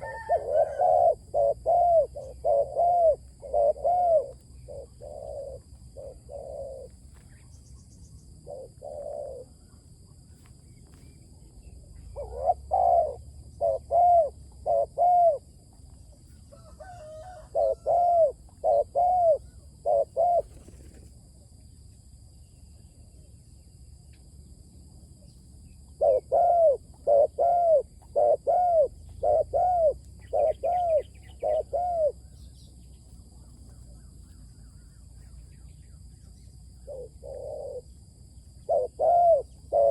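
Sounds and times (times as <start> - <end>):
dove cooing: 0.0 - 7.2, 8.4 - 9.7, 11.9 - 21.0, 25.9 - 32.4, 36.6 - 39.9.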